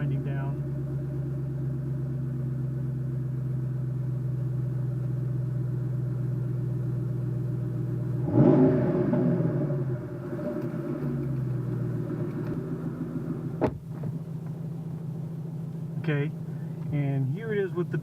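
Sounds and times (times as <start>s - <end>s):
car engine idling: 0.0s - 18.0s
engine revving on throttle blip: 8.2s - 13.8s.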